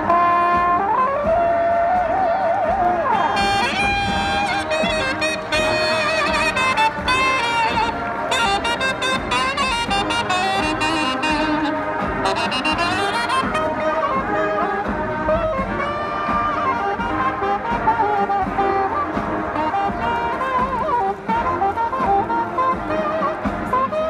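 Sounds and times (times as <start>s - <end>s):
marching band brass playing jazz: 0.0s - 24.0s.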